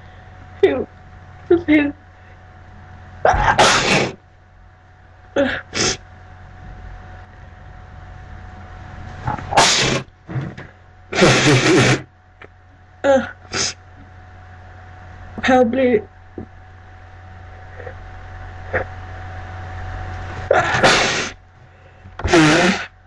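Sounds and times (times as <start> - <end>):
person sneezing: 3.3 - 4.2, 5.4 - 6.0, 9.5 - 10.0, 11.2 - 12.1, 13.2 - 13.8, 20.5 - 21.4, 22.2 - 22.9.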